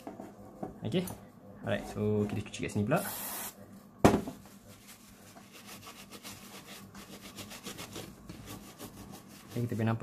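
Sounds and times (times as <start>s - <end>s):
knock: 4.0s - 4.4s
paper tissue rubbing: 4.5s - 10.0s.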